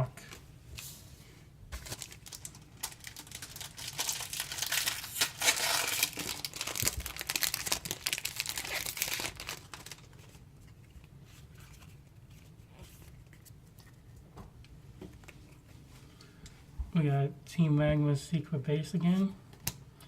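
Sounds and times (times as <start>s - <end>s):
foil wrapper crinkling and tearing: 1.8s - 10.4s.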